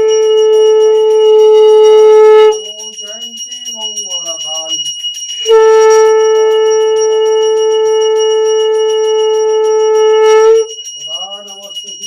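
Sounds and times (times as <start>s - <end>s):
conch shell blown: 0.0s - 3.0s, 5.3s - 10.9s
hand bell ringing: 0.0s - 12.0s.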